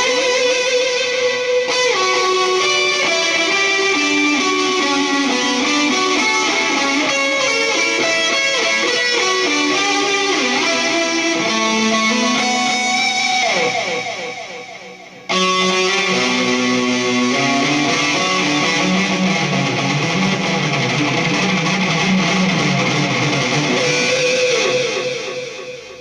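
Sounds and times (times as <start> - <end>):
distorted electric guitar solo with delay: 0.0 - 26.0.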